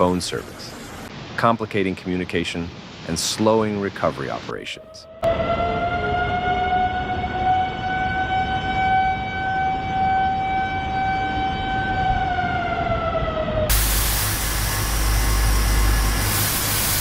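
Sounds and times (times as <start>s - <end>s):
background hiss: 0.0s - 4.9s, 13.7s - 17.0s
warning siren wailing: 4.7s - 16.4s.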